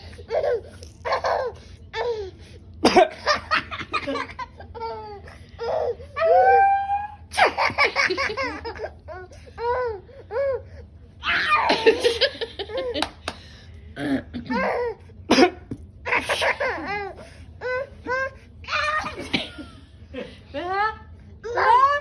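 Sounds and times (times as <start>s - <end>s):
baby laughing: 0.0s - 2.3s, 3.7s - 6.4s.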